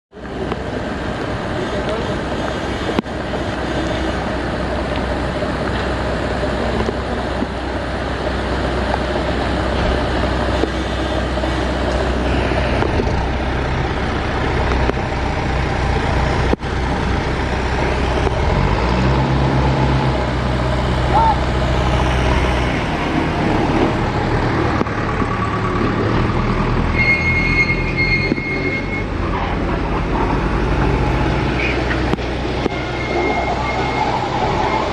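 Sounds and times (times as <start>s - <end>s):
heavy diesel machinery running: 0.2s - 34.9s.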